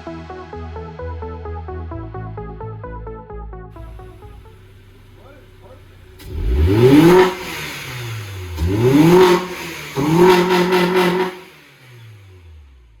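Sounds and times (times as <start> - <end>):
car engine revving: 3.8 - 13.0.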